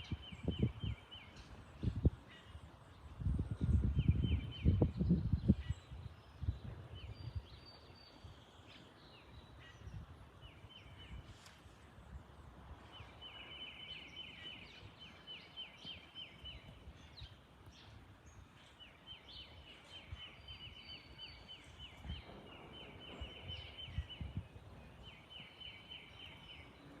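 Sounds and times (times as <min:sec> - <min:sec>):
low wind rumble: 0:00.0 - 0:27.0.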